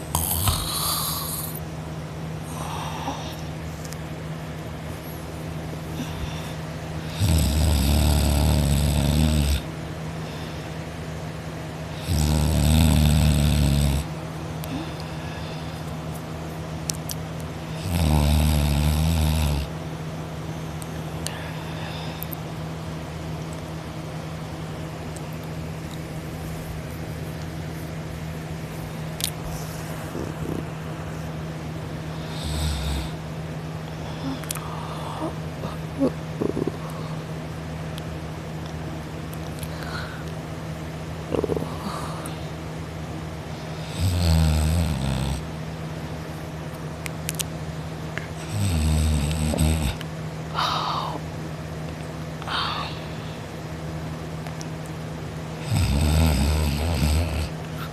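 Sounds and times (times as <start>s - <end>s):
person snoring and breathing: 0.0s - 1.6s, 2.4s - 3.6s, 5.9s - 10.7s, 11.9s - 15.9s, 17.6s - 19.8s, 29.8s - 30.8s, 32.1s - 33.2s, 33.9s - 37.3s, 41.2s - 42.6s, 43.6s - 45.5s, 48.4s - 51.3s, 52.4s - 53.4s, 55.6s - 57.9s
steady background hum: 0.0s - 57.9s.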